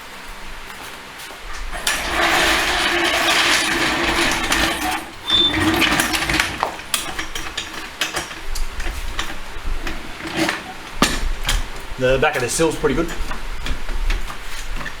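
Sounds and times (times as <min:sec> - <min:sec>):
car jack scraping metal rattle: 0:01.6 - 0:15.0
metallic clinks and knocks: 0:01.7 - 0:11.8.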